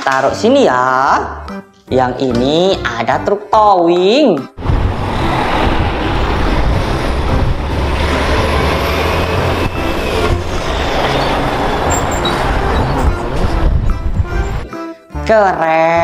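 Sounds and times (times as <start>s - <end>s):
heavy vehicle low rumble: 4.6s - 14.7s.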